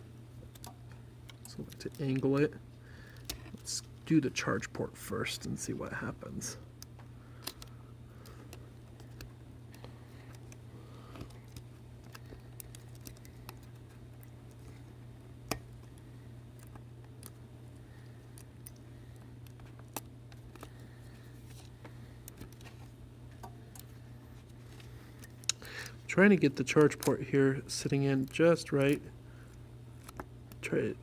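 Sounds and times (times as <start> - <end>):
steady low hum: 0.0 - 31.0
small tools clicking on phone: 6.7 - 17.4.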